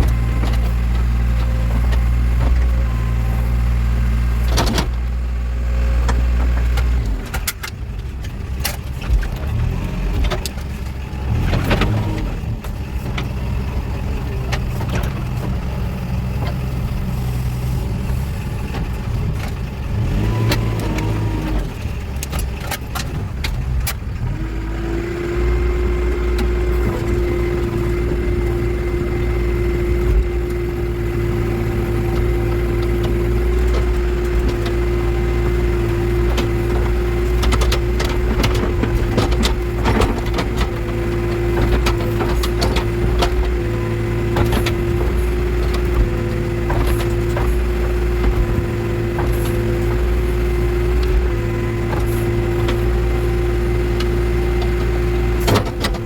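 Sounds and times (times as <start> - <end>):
diesel engine running: 0.0 - 56.0
knocks and clatter: 26.3 - 56.0.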